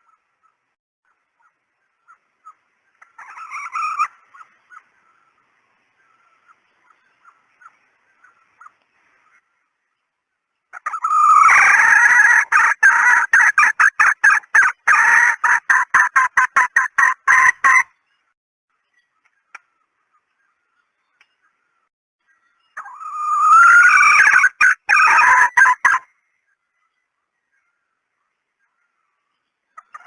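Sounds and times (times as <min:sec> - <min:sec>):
hen cackling: 0:01.4 - 0:05.0, 0:10.7 - 0:17.9, 0:22.8 - 0:26.1
hen clucking: 0:01.4 - 0:05.2, 0:10.7 - 0:17.9, 0:22.8 - 0:26.1, 0:29.8 - 0:30.0.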